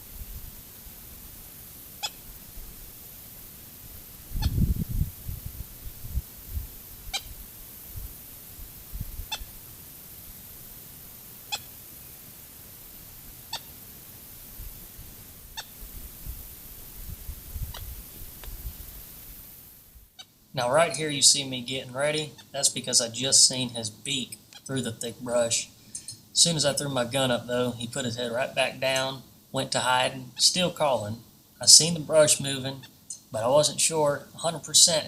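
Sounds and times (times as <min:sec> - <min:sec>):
moorhen calling: 0:02.0 - 0:02.3, 0:09.3 - 0:09.5, 0:11.5 - 0:11.8, 0:13.4 - 0:13.8.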